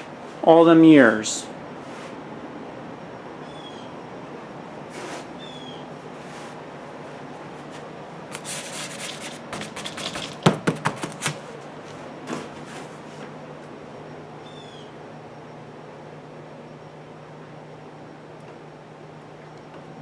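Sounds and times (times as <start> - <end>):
sharp knocks: 9.5 - 11.4.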